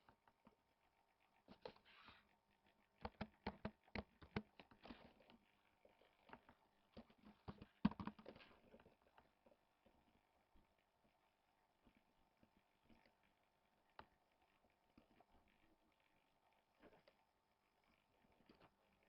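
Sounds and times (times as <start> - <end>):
keyboard and mouse clicking: 3.0 - 5.0, 7.5 - 8.4.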